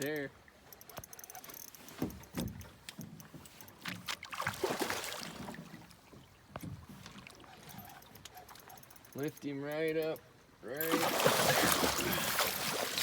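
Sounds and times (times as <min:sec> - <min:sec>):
fish thrashing and splashing water: 0:04.1 - 0:05.8, 0:10.8 - 0:13.0.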